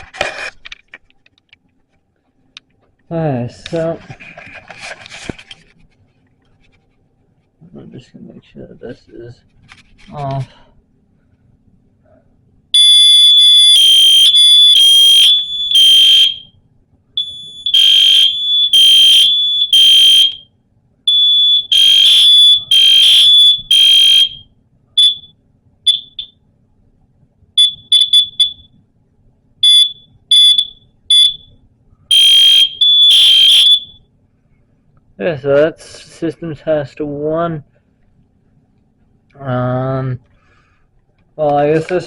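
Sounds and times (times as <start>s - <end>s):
fire alarm short chirps: 12.8s - 16.5s, 17.2s - 20.5s, 21.1s - 26.4s, 27.6s - 28.7s, 29.6s - 34.0s
fire alarm pulsing tone: 12.8s - 16.6s, 17.2s - 20.5s, 21.1s - 26.4s, 27.6s - 28.8s, 29.6s - 34.1s.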